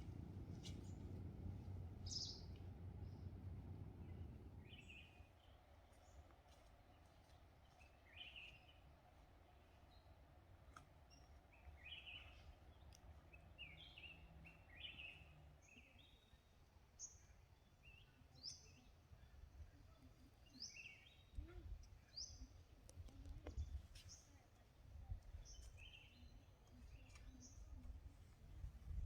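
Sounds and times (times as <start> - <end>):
low steady rumble: 0.0 - 5.6
faint chirping birdsong: 0.0 - 29.0.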